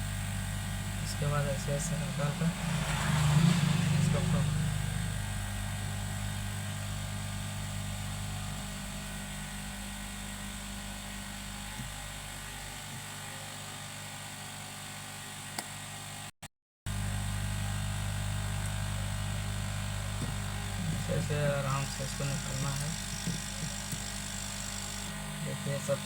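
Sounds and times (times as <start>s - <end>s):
electrical hum with hiss: 0.0s - 11.9s, 16.9s - 26.0s.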